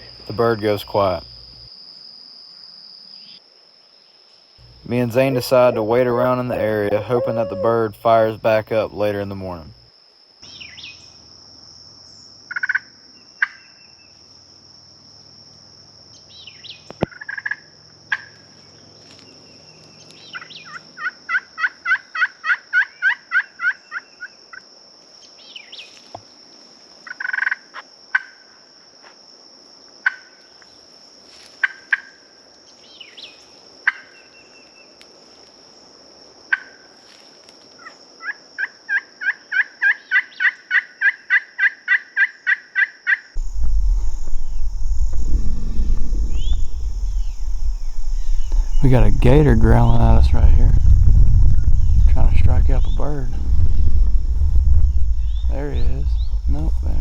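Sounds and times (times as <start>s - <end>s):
high insect hum: 0.0s - 39.4s, 43.4s - 57.0s
wild turkey yelping: 5.2s - 8.2s.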